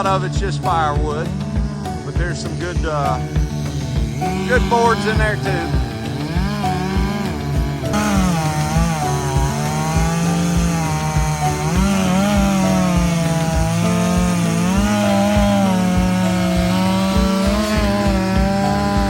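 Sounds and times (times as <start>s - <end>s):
chainsaw cutting log: 0.0s - 19.0s.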